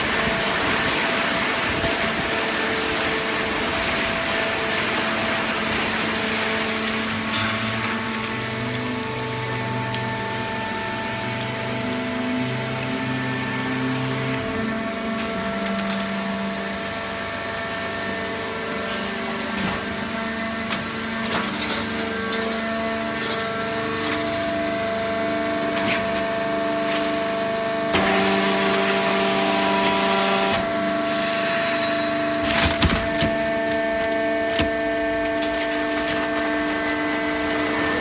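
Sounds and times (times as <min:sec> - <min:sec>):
baler motor and pump hum: 0:00.0 - 0:38.0
cardboard crackling and creaking: 0:32.4 - 0:38.0.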